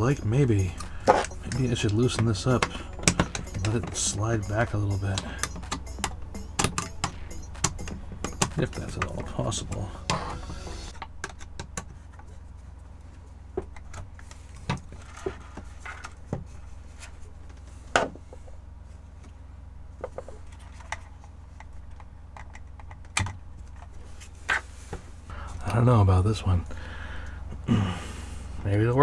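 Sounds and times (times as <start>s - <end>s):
steady low hum: 0.0s - 11.0s, 24.0s - 29.0s
plastic parts clicking and knocking: 0.8s - 10.2s.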